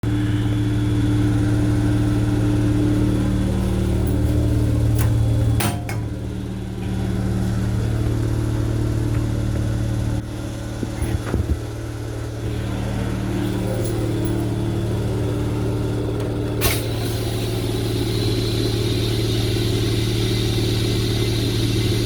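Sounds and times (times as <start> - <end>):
electric railcar hum: 0.0 - 22.0
sharp clicks and clunk: 4.9 - 6.2.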